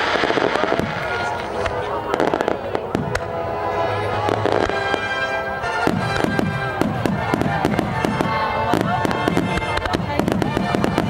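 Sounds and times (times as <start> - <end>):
fireworks bangs and crackling: 0.0 - 11.0.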